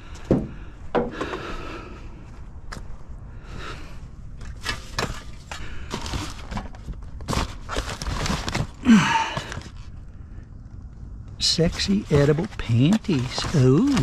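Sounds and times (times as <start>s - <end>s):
junk being handled: 4.4s - 9.9s, 11.7s - 14.0s.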